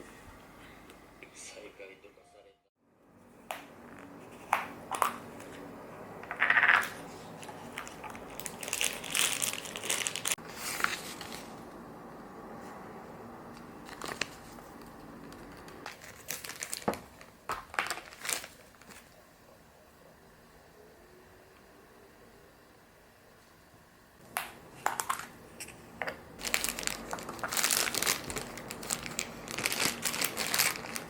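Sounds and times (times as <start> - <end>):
packaging crinkling and rustling: 6.5 - 11.6, 13.5 - 19.2, 24.8 - 31.0.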